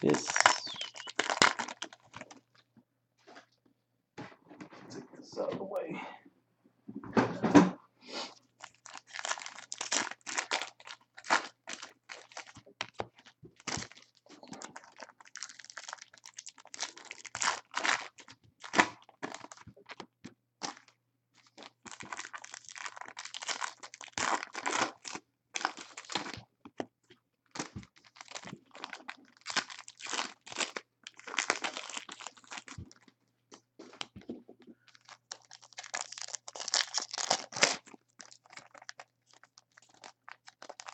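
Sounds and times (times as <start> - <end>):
wrappers tearing and crinkling: 0.0 - 2.6, 8.4 - 20.0, 20.6 - 26.4, 27.5 - 33.1, 34.8 - 40.9.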